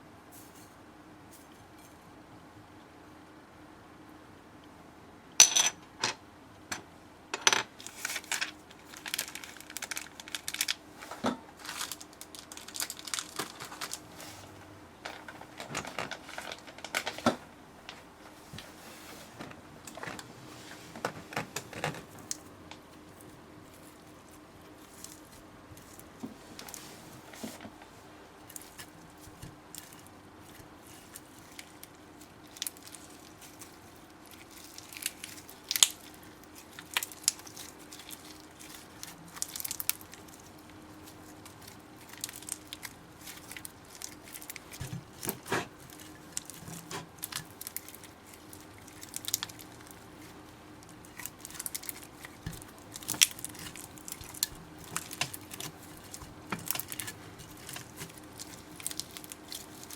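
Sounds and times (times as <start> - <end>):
faint steady hum: 0.0 - 59.9
slime squished by hand: 28.5 - 59.9.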